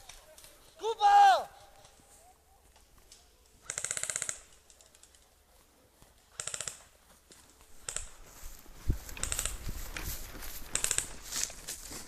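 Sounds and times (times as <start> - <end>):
airsoft gun full-auto bursts: 3.6 - 4.4, 6.3 - 6.8.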